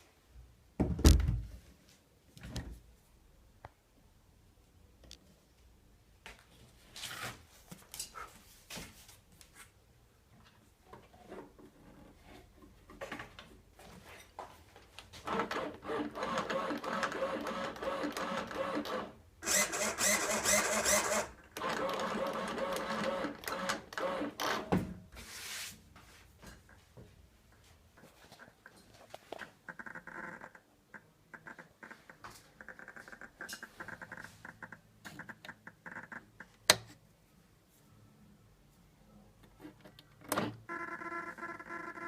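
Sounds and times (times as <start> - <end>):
small electric motor whirring: 15.9 - 23.6.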